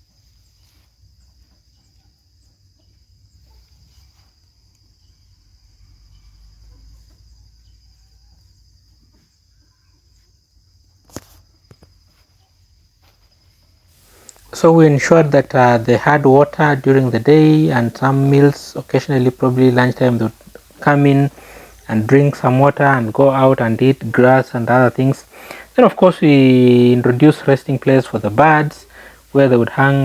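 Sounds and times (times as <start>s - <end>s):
high-pitched insect drone: 14.1s - 30.0s.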